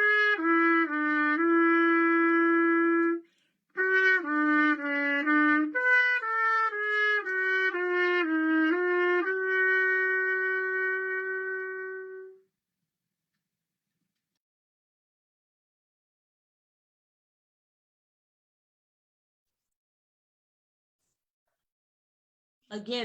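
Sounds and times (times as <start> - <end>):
wind instrument melody: 0.0 - 12.5.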